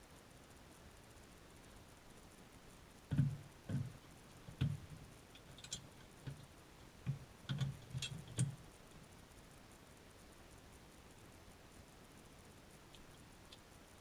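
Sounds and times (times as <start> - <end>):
light knocks and clicks: 3.1 - 8.6.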